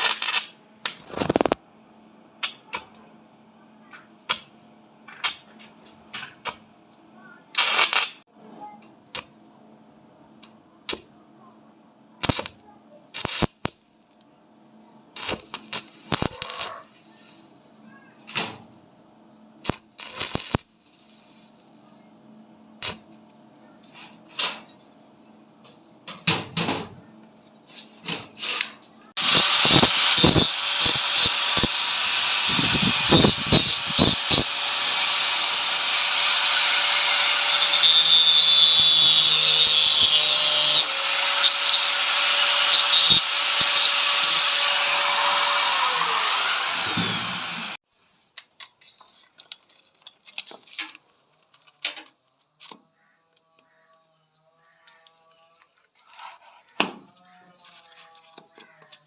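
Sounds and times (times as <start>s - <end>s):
power tool motor running: 29.2s - 47.8s.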